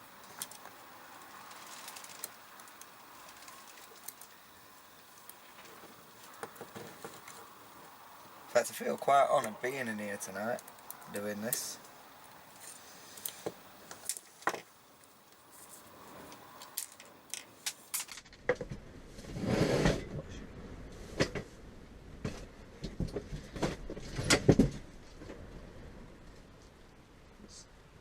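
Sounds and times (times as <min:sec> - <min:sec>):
rustling: 0:00.0 - 0:18.2
clicks and knocks of small parts: 0:00.2 - 0:04.3, 0:16.3 - 0:18.4.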